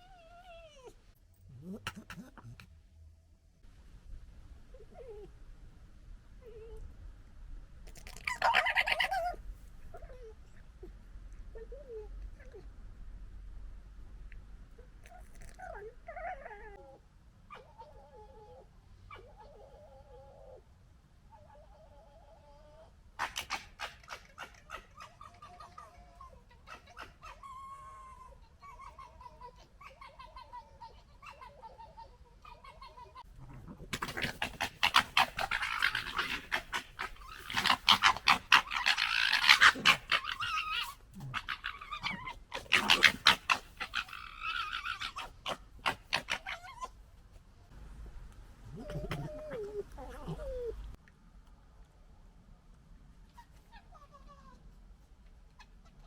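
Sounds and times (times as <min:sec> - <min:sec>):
foxes gekkering: 0:00.0 - 0:02.7, 0:07.9 - 0:12.7, 0:23.2 - 0:47.0, 0:48.6 - 0:51.0.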